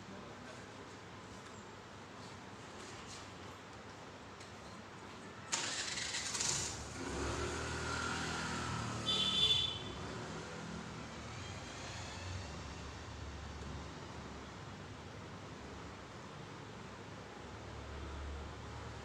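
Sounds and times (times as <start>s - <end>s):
vehicle engine passing: 5.6s - 9.2s.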